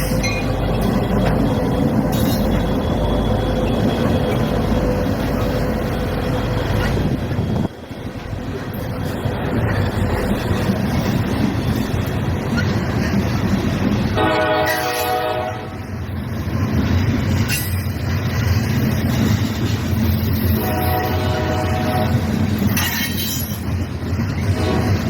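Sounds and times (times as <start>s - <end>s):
freight train rumbling past: 0.0s - 25.0s
locomotive horn blast: 14.2s - 15.9s, 20.6s - 22.3s, 24.5s - 25.0s.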